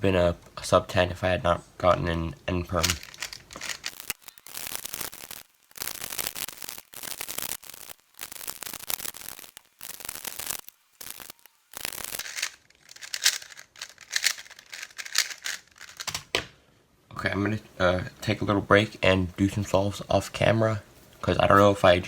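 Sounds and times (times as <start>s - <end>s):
speed cube clicking and rattling: 2.8s - 16.2s.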